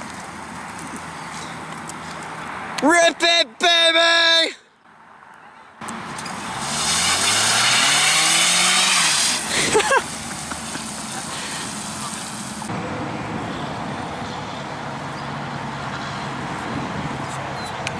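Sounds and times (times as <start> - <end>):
car engine revving: 6.2 - 12.7
water spray hissing: 6.6 - 12.7.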